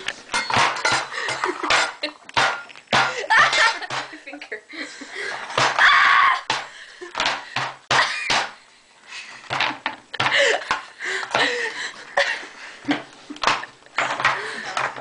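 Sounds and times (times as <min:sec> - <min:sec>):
girls laughing: 0:01.1 - 0:02.3, 0:03.1 - 0:05.3
girls shrieking: 0:05.8 - 0:06.5.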